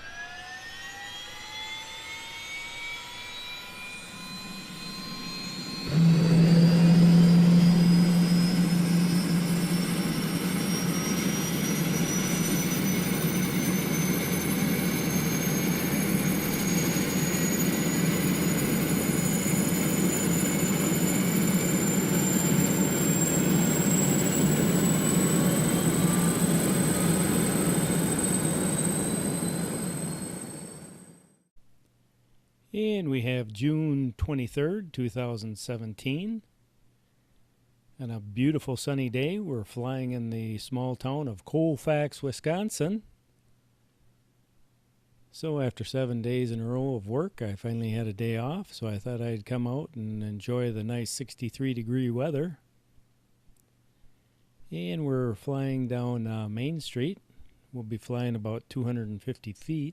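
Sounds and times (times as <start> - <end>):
machine whine spooling up: 0.0 - 31.5
strong low hum: 4.1 - 13.5.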